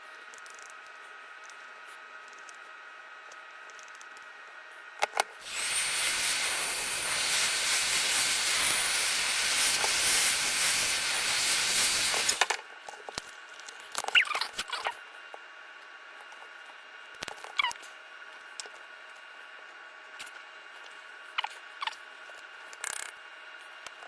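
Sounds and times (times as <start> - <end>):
rushing air hiss: 5.4 - 12.5.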